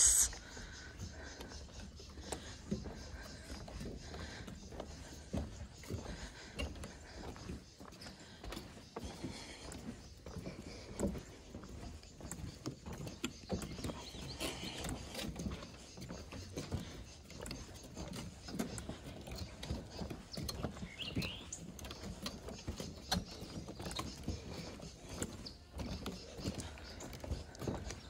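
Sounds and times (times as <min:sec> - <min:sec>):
bird chirp: 0:00.0 - 0:28.0
footsteps on wooden boardwalk: 0:00.0 - 0:28.0.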